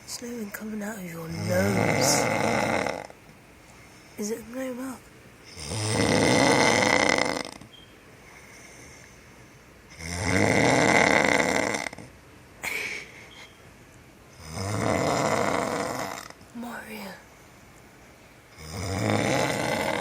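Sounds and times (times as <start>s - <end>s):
man snoring loudly: 1.3s - 3.1s, 5.5s - 7.6s, 10.0s - 12.0s, 14.4s - 16.3s, 18.6s - 20.0s.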